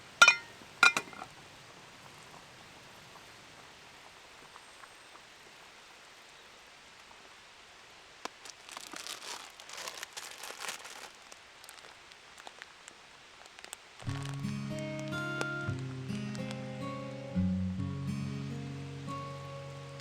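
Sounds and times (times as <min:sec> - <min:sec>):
soft steady hiss: 0:00.0 - 0:20.0
crinkling and rustling: 0:08.2 - 0:16.6.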